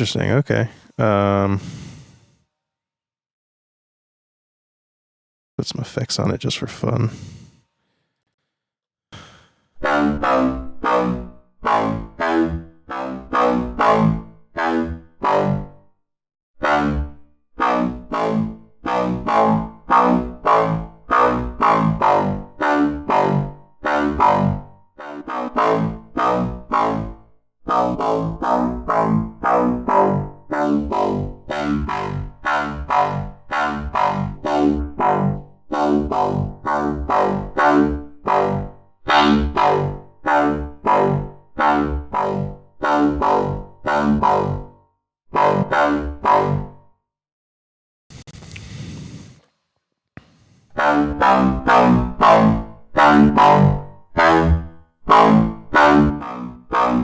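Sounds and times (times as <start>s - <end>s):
synth bass notes: 9.8s - 15.8s, 16.6s - 44.7s, 45.4s - 46.8s, 50.8s - 57.0s.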